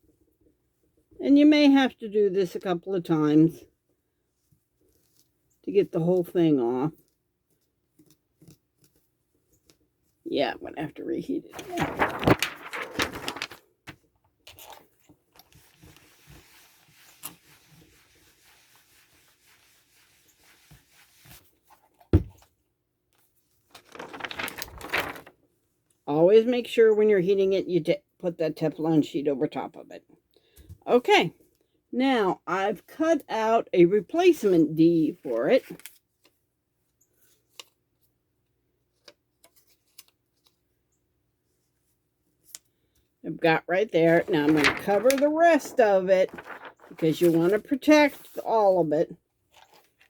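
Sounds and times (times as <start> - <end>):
crinkly rustling: 11.4 - 22.0, 23.5 - 25.5, 43.9 - 48.8, 49.4 - 50.0
hands scratching and rubbing: 15.4 - 21.4, 44.3 - 47.5
thump on work surface: 22.2 - 22.4.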